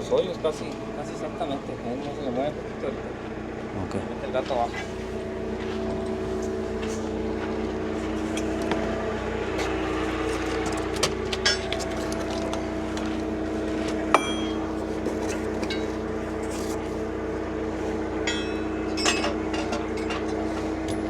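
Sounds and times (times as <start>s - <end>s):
forklift engine idling: 0.0s - 21.0s
metal clinks: 14.1s - 14.8s, 18.2s - 19.4s.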